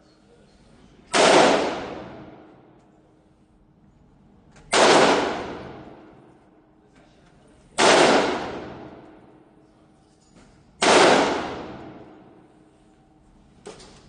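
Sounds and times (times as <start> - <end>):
echoing gunshots: 1.1 - 2.7, 4.7 - 6.3, 7.8 - 9.4, 10.8 - 12.5.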